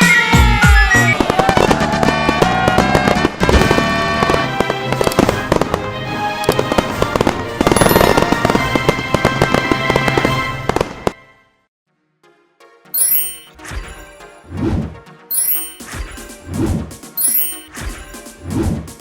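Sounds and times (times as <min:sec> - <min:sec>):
rapid popping and crackling: 0:00.9 - 0:11.2
cartoon background music: 0:11.9 - 0:19.0.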